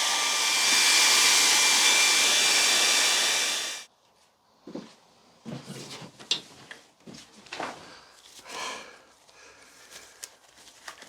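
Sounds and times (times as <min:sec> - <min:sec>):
hair dryer blowing: 0:00.0 - 0:03.9.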